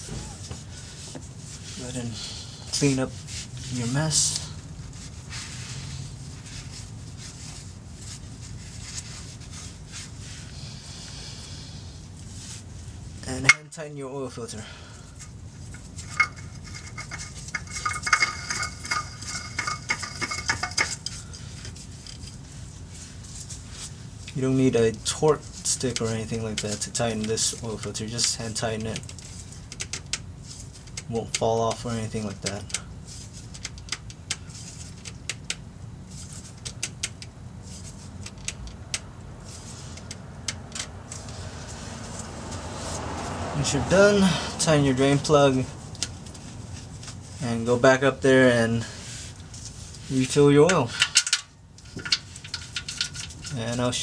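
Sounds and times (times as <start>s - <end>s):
steady low hum: 0.0s - 13.6s, 14.4s - 54.0s
oil filter clicking and scraping: 0.1s - 13.6s, 14.9s - 47.9s, 48.8s - 54.0s
sharp clicks and taps of tools: 51.0s - 53.6s.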